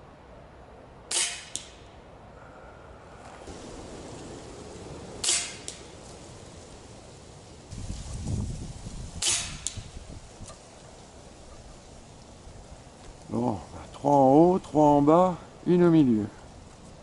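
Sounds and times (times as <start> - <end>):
air rifle shot crack: 5.2 - 5.9.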